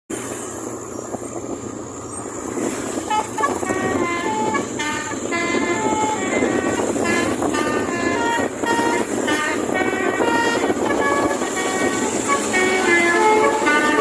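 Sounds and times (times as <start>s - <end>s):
horn playing stepped notes: 3.0s - 14.0s.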